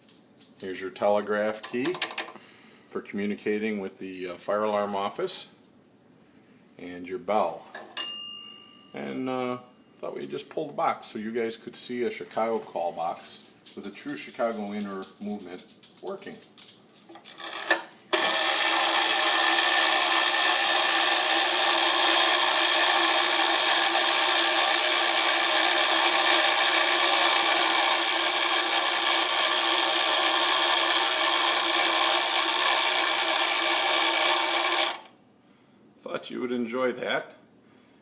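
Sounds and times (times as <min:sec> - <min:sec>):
mechanical clockwork whirr: 0:17.2 - 0:35.1.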